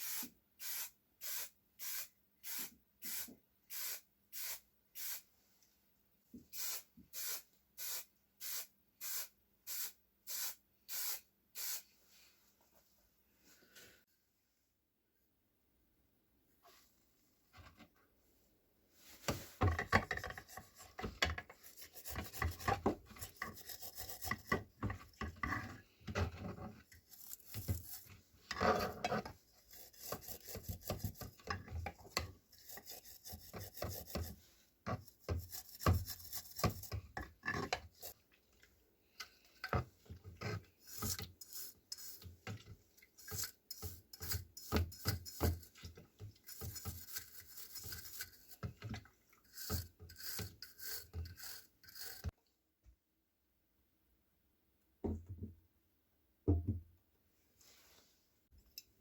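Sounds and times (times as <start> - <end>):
hand scraping and rubbing metal: 19.0 - 38.3, 39.2 - 52.4.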